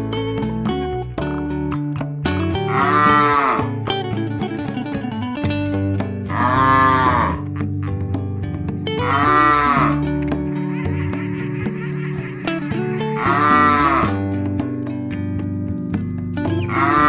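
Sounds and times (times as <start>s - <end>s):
plucked guitar music: 0.0s - 17.0s
cattle mooing: 9.1s - 10.0s, 13.2s - 14.1s.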